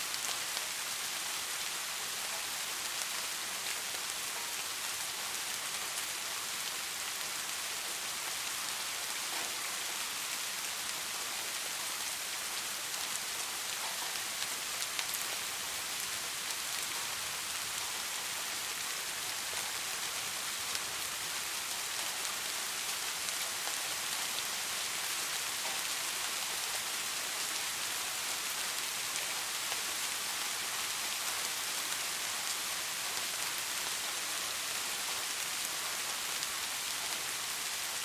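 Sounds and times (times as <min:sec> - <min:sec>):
steady rain falling: 0:00.0 - 0:38.0.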